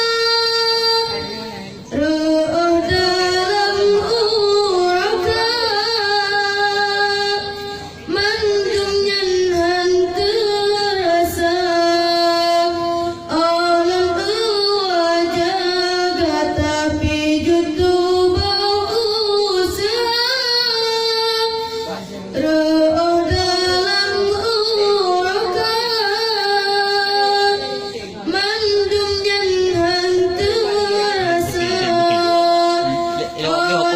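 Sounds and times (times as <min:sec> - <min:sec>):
high voice singing: 0:28.4 - 0:33.9.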